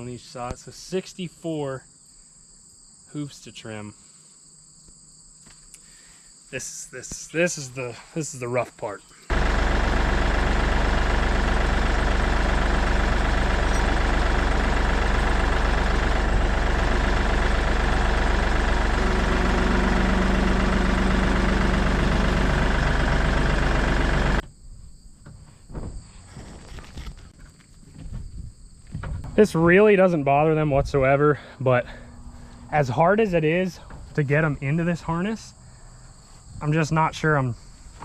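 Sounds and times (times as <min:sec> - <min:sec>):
tractor diesel engine running: 0:09.3 - 0:24.4.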